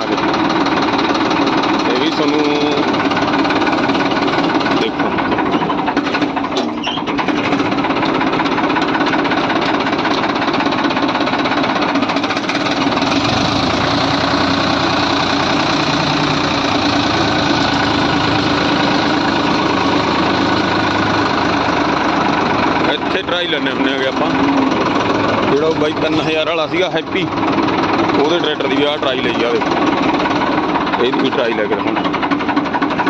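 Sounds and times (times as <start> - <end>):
tractor diesel engine running: 0.0 - 33.0.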